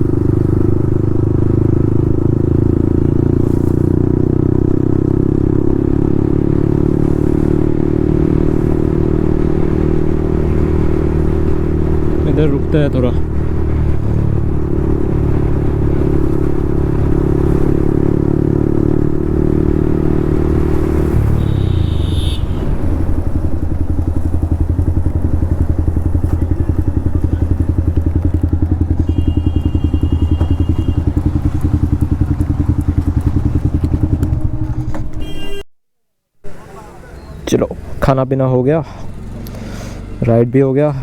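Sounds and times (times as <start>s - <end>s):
motorcycle engine running then idling: 19.4s - 35.2s.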